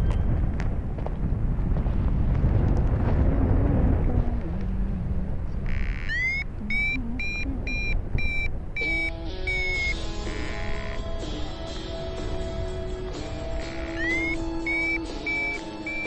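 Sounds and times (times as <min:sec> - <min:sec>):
wind buffeting microphone: 0:00.0 - 0:15.5
short high-pitched tones: 0:05.8 - 0:11.0, 0:13.9 - 0:16.0.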